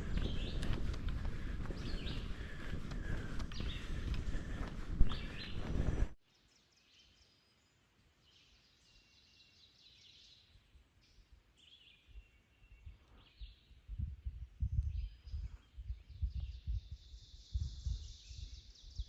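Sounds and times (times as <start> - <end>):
crunching footsteps: 0.0 - 6.2
birds chirping: 0.0 - 13.9.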